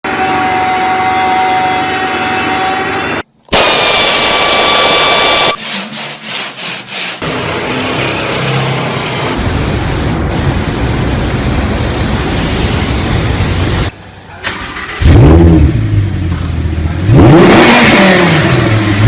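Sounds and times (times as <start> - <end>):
loud tool burst: 3.5 - 6.0
workshop tool noise: 4.8 - 7.3.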